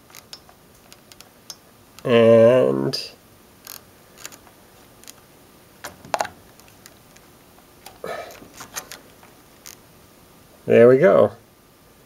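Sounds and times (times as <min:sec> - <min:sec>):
test probes clicking in outlet: 0:00.0 - 0:02.1.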